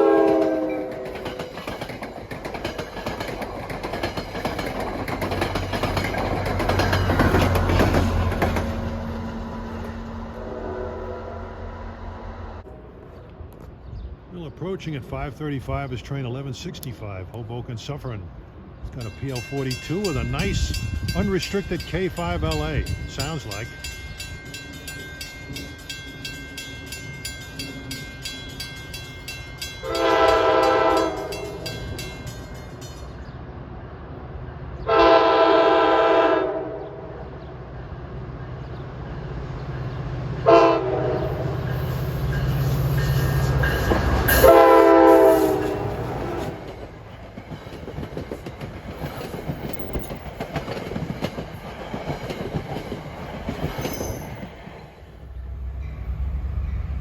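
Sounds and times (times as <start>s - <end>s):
locomotive air horn blasts: 0.0s - 1.2s, 10.3s - 11.6s, 29.8s - 31.3s, 34.9s - 37.1s, 40.4s - 41.5s, 44.3s - 46.0s
train cars running past: 0.0s - 57.0s.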